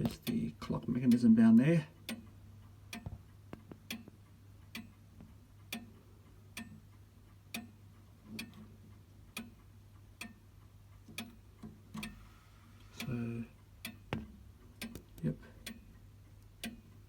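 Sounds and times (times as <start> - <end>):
grandfather clock ticking: 0.0 - 12.3, 12.9 - 17.0.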